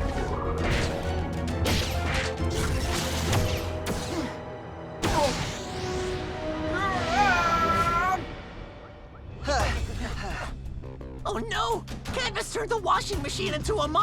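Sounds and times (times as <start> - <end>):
background music: 0.0 - 14.0.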